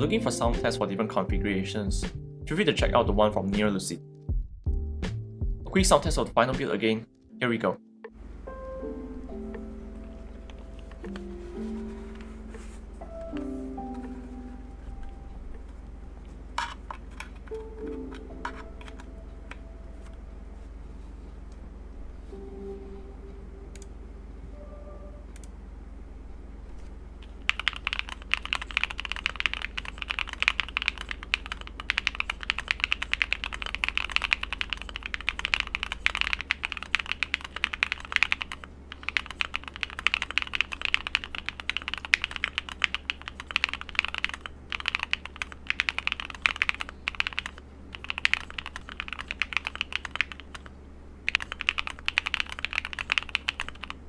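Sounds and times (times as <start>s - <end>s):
fast mechanical keyboard typing: 27.2s - 50.7s, 51.3s - 54.0s.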